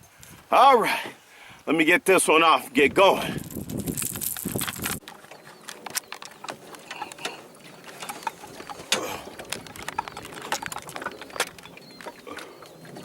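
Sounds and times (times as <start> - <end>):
fishing tackle clicking and knocking: 3.6 - 13.0.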